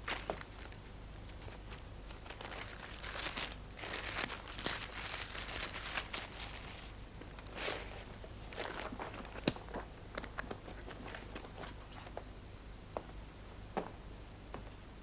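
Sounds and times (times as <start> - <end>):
rustling: 0.0 - 12.3
steady low hum: 0.0 - 15.0
soft footsteps: 12.9 - 14.8.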